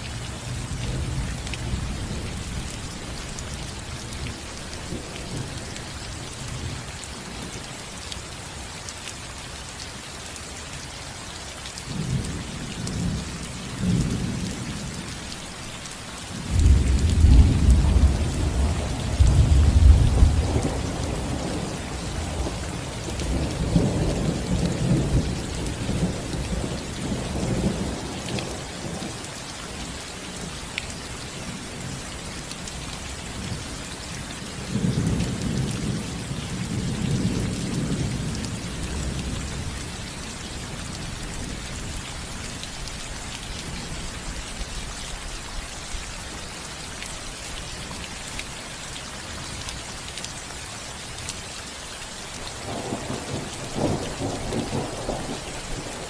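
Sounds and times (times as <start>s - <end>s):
rain on a roof: 0.0s - 56.0s
thunder rumbling: 52.6s - 56.0s.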